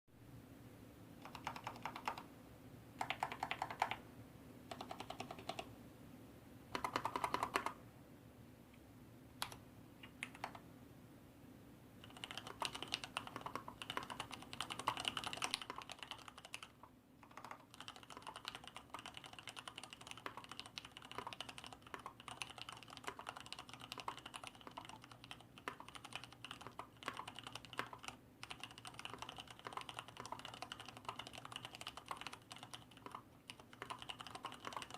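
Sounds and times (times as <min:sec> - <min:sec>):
typing on mechanical keyboard: 0:01.2 - 0:02.3, 0:03.0 - 0:04.0, 0:04.7 - 0:05.7, 0:06.7 - 0:07.8, 0:09.4 - 0:10.6, 0:12.0 - 0:34.9.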